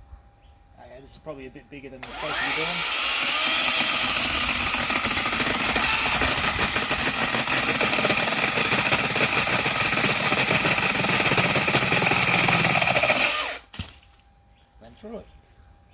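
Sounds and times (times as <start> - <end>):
chainsaw cutting log: 2.0 - 14.0.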